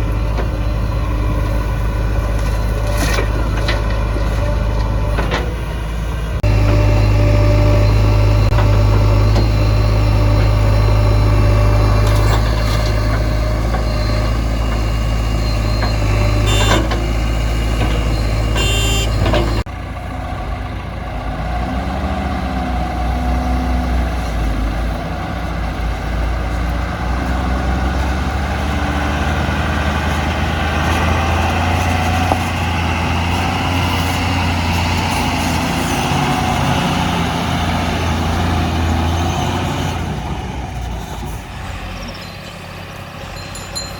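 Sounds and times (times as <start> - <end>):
diesel engines running: 0.0 - 43.9.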